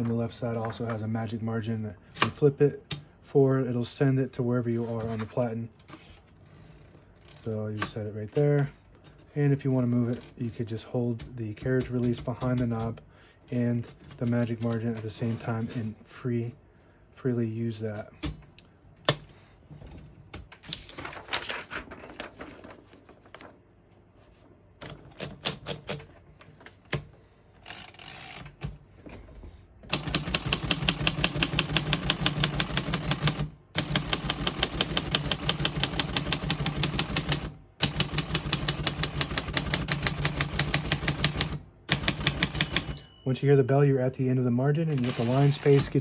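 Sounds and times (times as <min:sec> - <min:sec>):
fast typewriter typing: 0:29.9 - 0:43.0, 0:44.9 - 0:46.0
typewriter carriage ratcheting: 0:29.9 - 0:43.0, 0:44.9 - 0:46.0.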